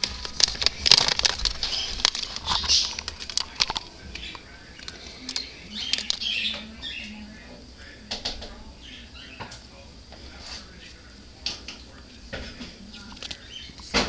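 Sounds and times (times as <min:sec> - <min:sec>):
rustling: 0:00.0 - 0:07.1
beak and claws tapping: 0:00.0 - 0:14.0.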